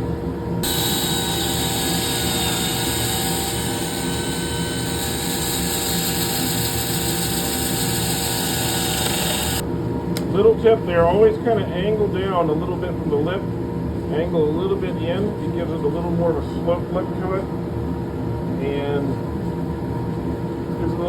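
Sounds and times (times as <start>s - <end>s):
electric sander on wood: 0.6s - 9.7s
lathe motor humming: 0.6s - 9.7s.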